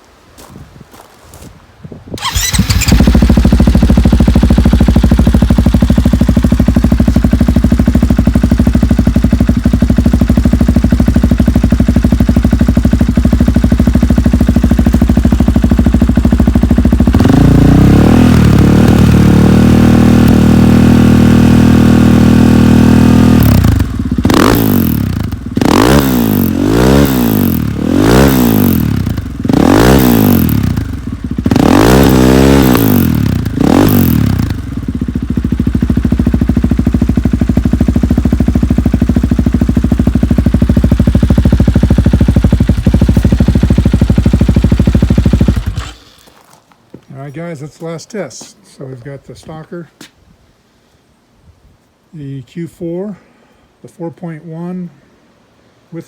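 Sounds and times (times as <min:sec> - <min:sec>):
dirt bike engine revving: 0:02.2 - 0:46.4.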